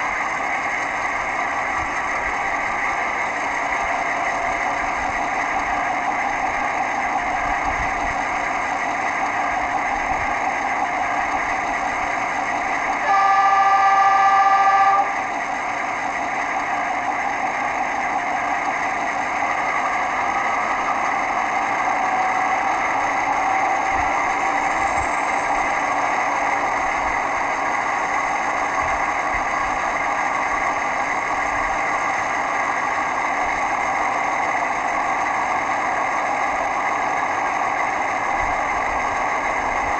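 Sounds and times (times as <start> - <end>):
diesel locomotive engine running: 0.0 - 39.9
locomotive horn blast: 13.0 - 15.2.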